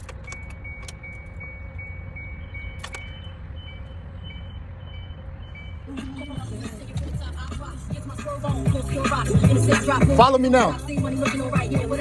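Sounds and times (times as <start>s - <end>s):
electronic warning beeps: 0.1s - 6.5s.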